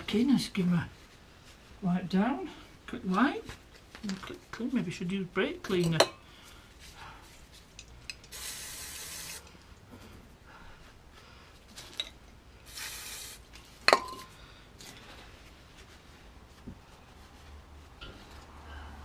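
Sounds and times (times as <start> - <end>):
aerosol spray hissing: 8.3 - 9.5, 12.7 - 13.5.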